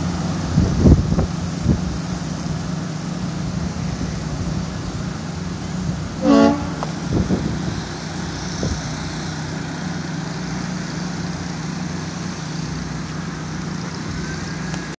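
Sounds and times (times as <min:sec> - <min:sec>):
constant low hum: 0:00.0 - 0:15.0
gusty wind: 0:00.0 - 0:15.0.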